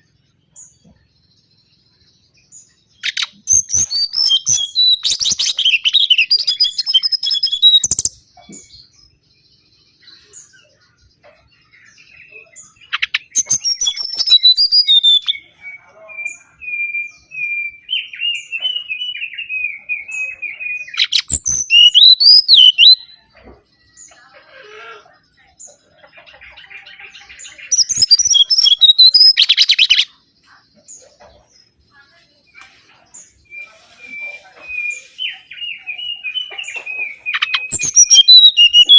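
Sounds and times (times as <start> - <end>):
bird singing chirps and whistles: 3.0 - 8.6, 12.7 - 23.2, 27.4 - 30.1, 33.4 - 38.9.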